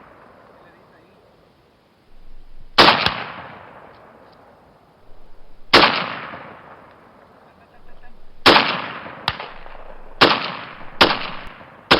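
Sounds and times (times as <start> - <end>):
rough rising noise: 2.1 - 2.9, 5.0 - 5.9, 7.8 - 8.6, 9.4 - 11.6
echoing gunshots: 2.2 - 3.9, 5.1 - 11.9.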